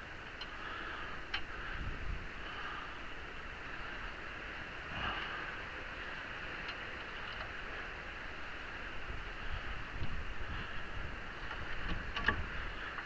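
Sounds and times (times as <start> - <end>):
steady background hiss: 0.0 - 13.0
faint clicks: 0.3 - 0.6, 1.2 - 1.5, 6.6 - 7.6.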